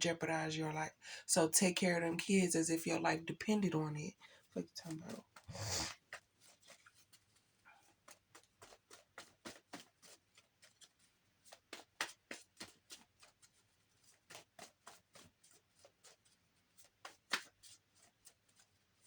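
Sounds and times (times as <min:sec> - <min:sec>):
cards being shuffled: 0:16.8 - 0:18.1.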